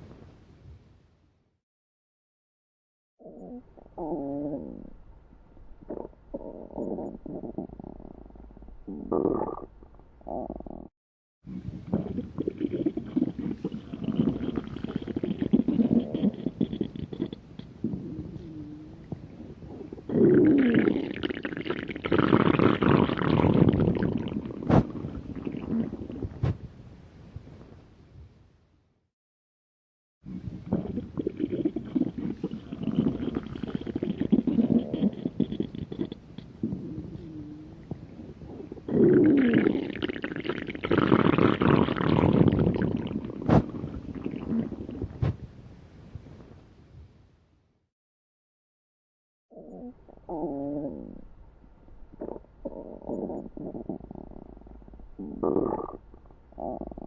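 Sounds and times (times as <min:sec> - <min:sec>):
stomach growling: 0:03.2 - 0:05.0, 0:05.8 - 0:10.9, 0:11.5 - 0:26.7, 0:30.3 - 0:45.5, 0:49.5 - 0:51.3, 0:52.1 - 0:57.0.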